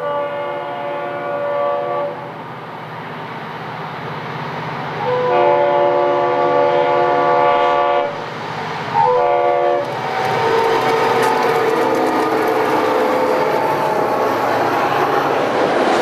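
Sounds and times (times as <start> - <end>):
locomotive air horn: 0.0 - 2.3, 5.0 - 8.2, 9.0 - 15.1
wheels clattering on rail: 8.3 - 16.0.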